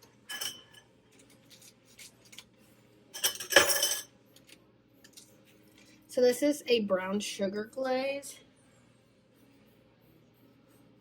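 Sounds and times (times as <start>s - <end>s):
utensils and dishes clattering: 0.2s - 2.1s, 3.1s - 4.1s.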